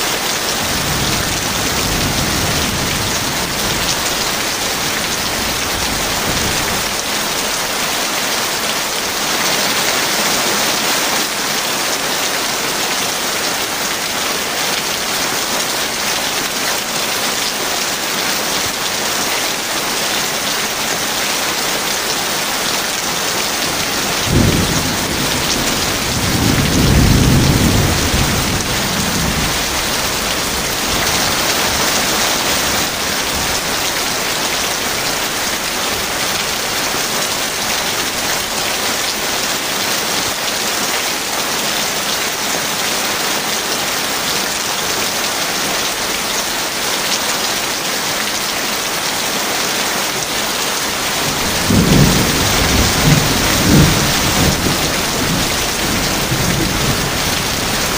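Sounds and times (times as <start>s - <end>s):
heavy rain falling: 0.0s - 57.9s
rolling thunder rumble: 23.9s - 31.1s, 51.3s - 57.9s.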